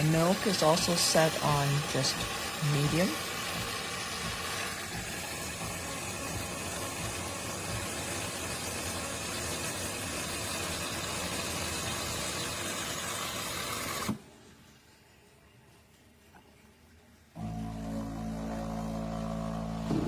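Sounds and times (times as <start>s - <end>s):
steam hiss: 0.0s - 14.2s
machine hum: 17.3s - 20.0s.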